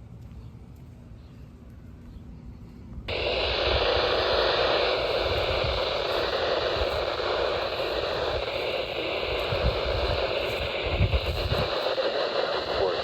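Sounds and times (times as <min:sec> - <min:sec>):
radio static hiss: 0:03.1 - 0:13.0.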